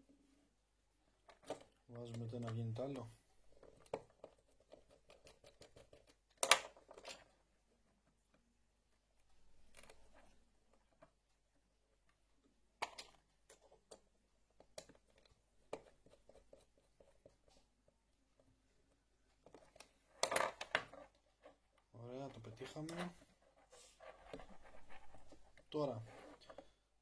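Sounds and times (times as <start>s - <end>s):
soft rustle: 20.9s - 26.9s.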